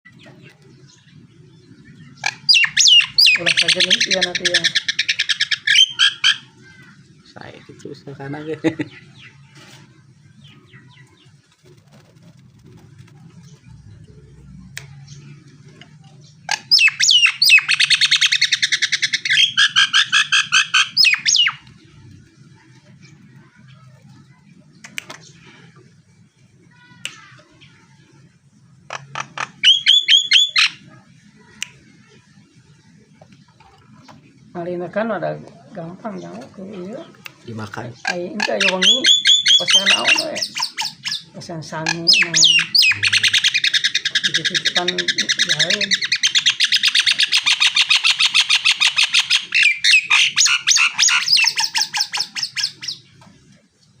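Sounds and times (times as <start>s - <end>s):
starling singing rapid notes: 0.1s - 53.2s
myna calling: 1.8s - 9.7s, 13.5s - 24.2s, 28.8s - 32.2s, 33.6s - 53.2s
sweeping whistled bird notes: 29.6s - 30.9s.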